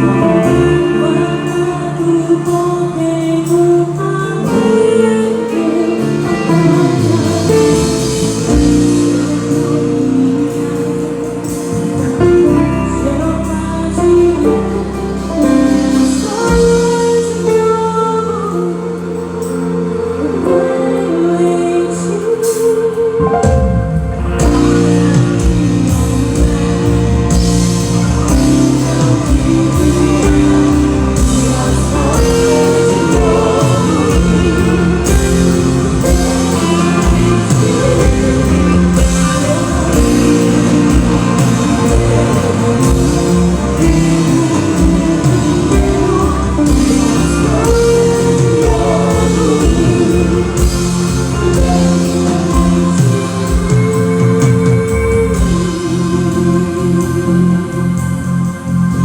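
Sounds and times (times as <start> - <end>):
gospel band music: 0.0 - 59.0
steady drum beat: 23.4 - 59.0.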